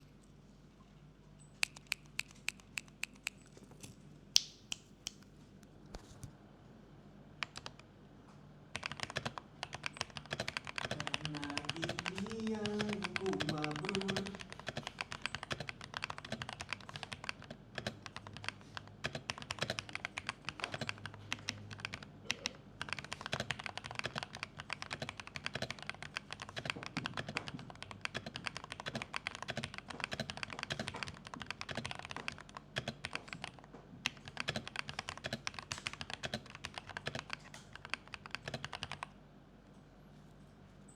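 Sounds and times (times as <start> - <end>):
mechanical keyboard typing: 7.4 - 7.8, 8.7 - 39.2.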